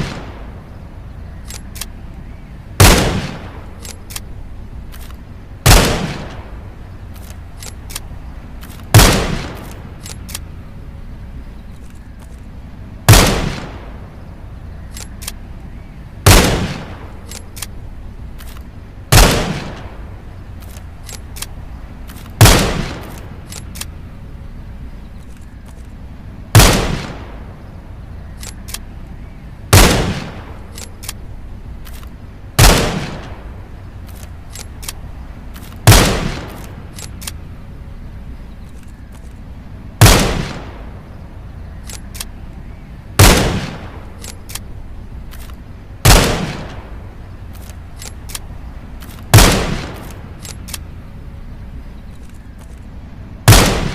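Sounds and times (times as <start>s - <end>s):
rifle shots cracking: 0.0s - 0.6s, 2.8s - 10.6s, 13.1s - 14.1s, 16.2s - 24.0s, 26.5s - 27.6s, 29.7s - 37.6s, 40.0s - 41.1s, 43.2s - 51.1s, 53.4s - 53.9s
faint ticks: 38.3s - 39.8s.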